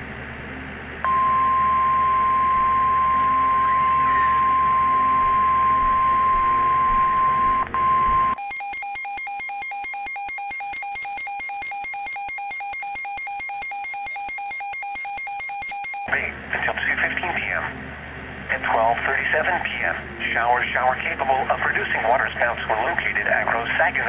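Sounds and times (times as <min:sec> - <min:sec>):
weather radio alert tone: 0:01.1 - 0:08.4
rapid pulsed electronic beeping: 0:02.0 - 0:16.1
radio hiss: 0:16.1 - 0:17.8, 0:18.5 - 0:24.0.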